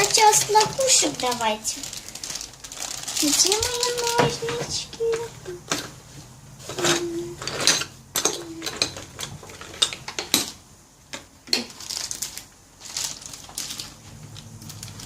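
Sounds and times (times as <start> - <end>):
plastic packet rustling: 0.0 - 6.0, 11.5 - 15.0.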